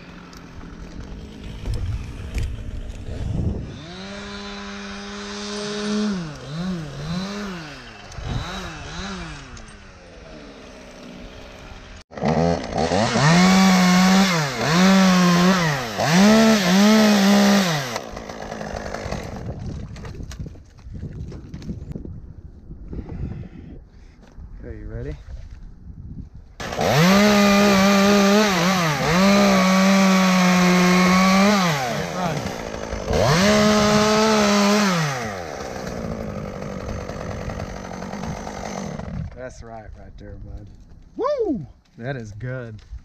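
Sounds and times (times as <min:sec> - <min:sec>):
chainsaw revving: 0:00.0 - 0:19.6, 0:26.6 - 0:39.4.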